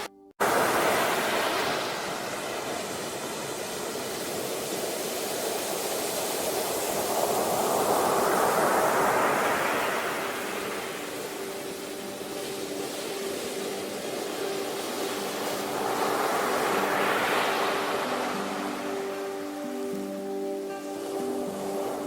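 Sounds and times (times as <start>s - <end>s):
waves washing on shore: 0.0s - 22.0s.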